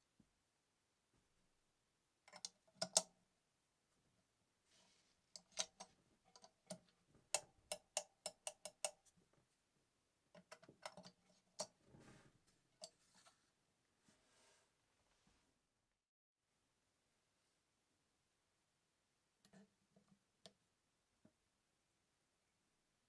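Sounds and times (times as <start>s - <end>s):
soft rustle: 4.6s - 5.3s, 11.3s - 15.5s
clicks of sewing machine parts: 10.4s - 11.8s.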